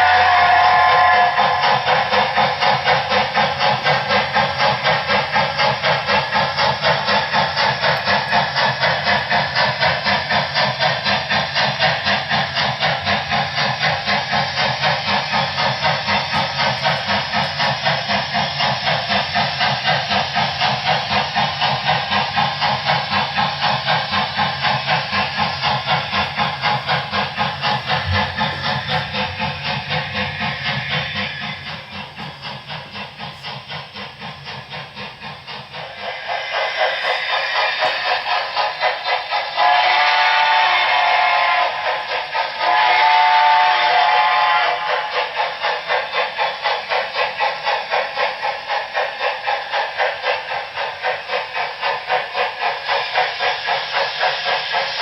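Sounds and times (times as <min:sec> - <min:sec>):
model steam locomotive chuffing: 0:00.0 - 0:55.0
steam hiss: 0:00.0 - 0:55.0.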